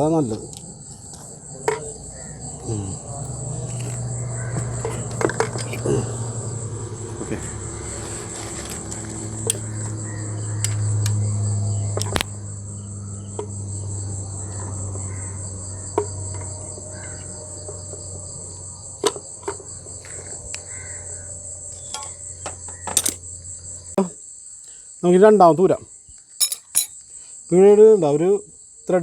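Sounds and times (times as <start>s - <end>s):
low hum: 0.0s - 18.9s
crickets chirping: 0.0s - 29.0s
hand tools clinking on metal: 2.6s - 6.3s, 22.9s - 23.2s, 26.4s - 27.0s.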